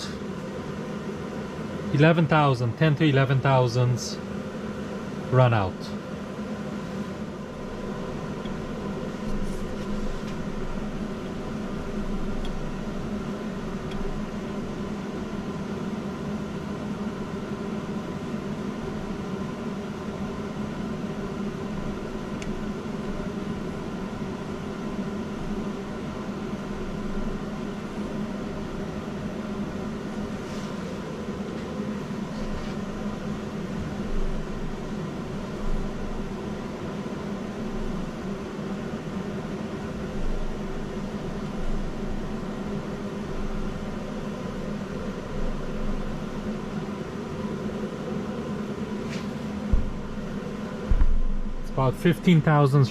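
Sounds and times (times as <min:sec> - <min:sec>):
steady mechanical hum: 0:00.0 - 0:52.9
steady tones: 0:49.6 - 0:52.9.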